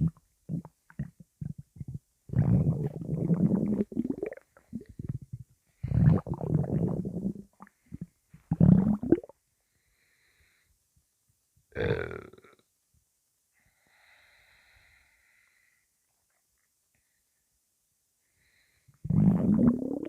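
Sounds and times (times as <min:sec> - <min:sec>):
stomach rumbling and gurgling: 0:00.0 - 0:09.3, 0:19.0 - 0:20.0.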